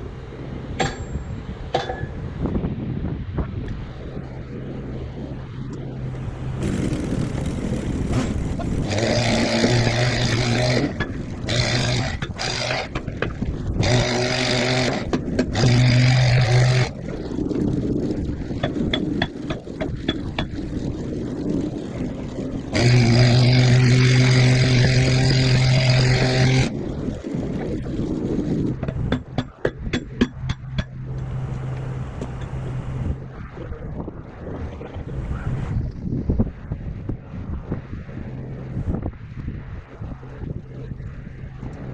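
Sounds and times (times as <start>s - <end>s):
rough mechanical noise: 3.7s - 36.2s
machine motor pitched hum: 4.3s - 13.0s, 13.8s - 17.0s, 22.6s - 26.7s.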